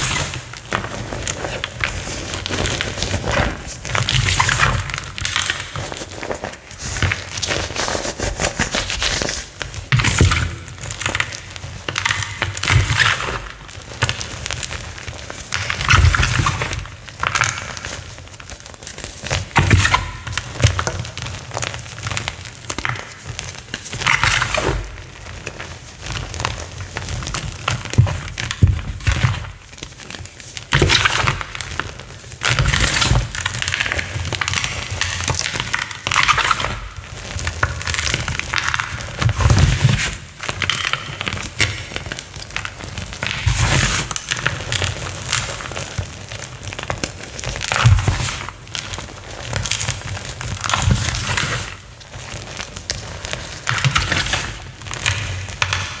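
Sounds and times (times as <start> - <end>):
chalk crunching and crumbling: 0.0 - 56.0.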